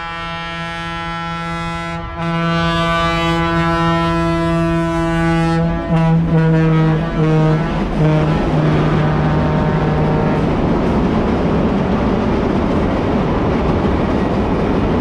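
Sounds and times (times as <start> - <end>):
locomotive horn blasts: 0.0 - 10.6.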